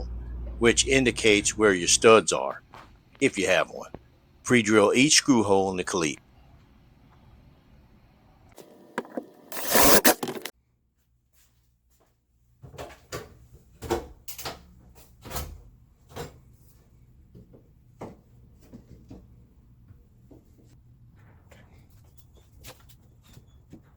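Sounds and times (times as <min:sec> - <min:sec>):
loud scraping: 0:09.0 - 0:10.5.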